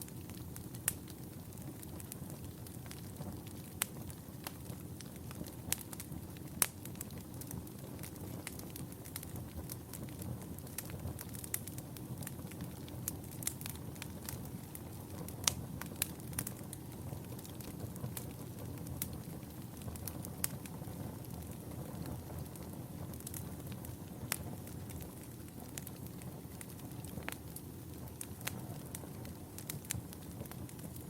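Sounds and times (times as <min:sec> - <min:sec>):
wood fire crackling: 0:00.0 - 0:31.0.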